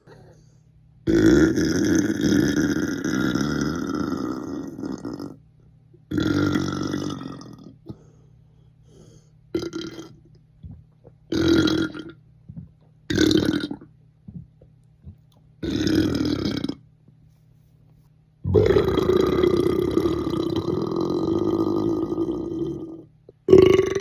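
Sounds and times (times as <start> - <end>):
person burping loudly: 1.1 - 5.4, 6.1 - 8.0, 9.6 - 10.2, 11.3 - 14.5, 15.6 - 16.8, 18.5 - 24.0.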